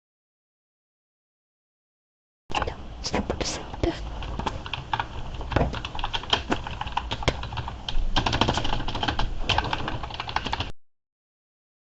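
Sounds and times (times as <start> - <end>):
membrane keyboard typing: 3.3 - 10.8.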